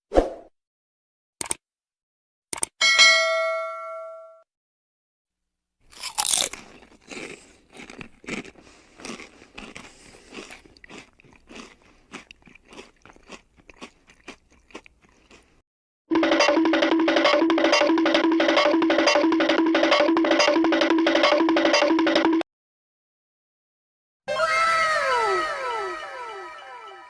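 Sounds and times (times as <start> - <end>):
click: 1.4 - 1.6, 2.5 - 2.7
bell-like ding: 2.8 - 4.4
crunching chewing: 5.9 - 15.6.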